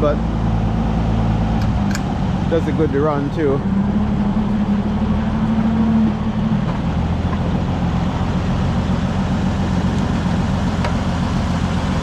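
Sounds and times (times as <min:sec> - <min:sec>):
tractor engine running: 0:00.0 - 0:12.0.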